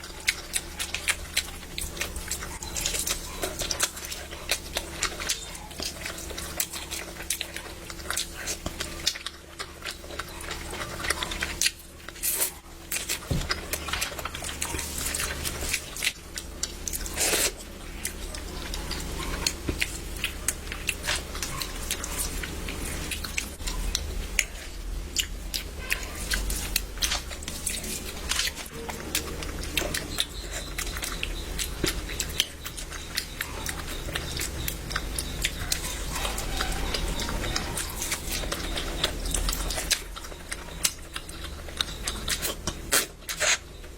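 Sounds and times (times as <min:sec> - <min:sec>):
person chewing food: 0:00.0 - 0:43.9
steady low hum: 0:00.0 - 0:43.9.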